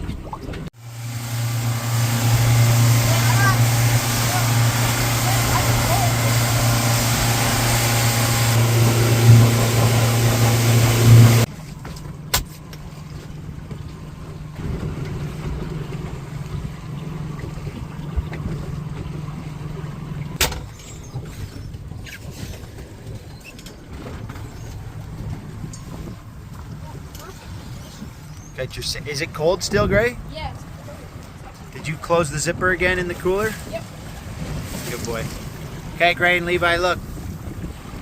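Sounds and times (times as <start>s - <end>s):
low hum: 0.0s - 22.0s
boat engine droning: 0.0s - 38.0s.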